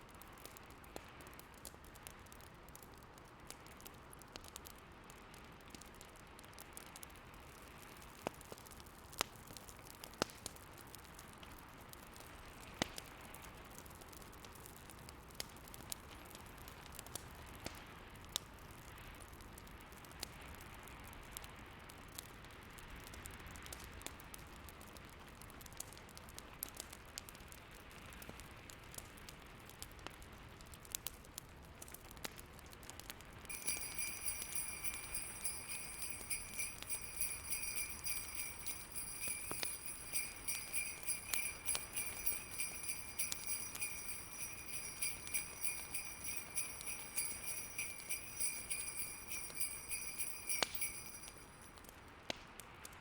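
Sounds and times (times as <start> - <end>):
snowstorm wind: 33.5 - 51.6
fireplace crackling: 33.5 - 51.8
jingle bells shaking: 33.5 - 51.8.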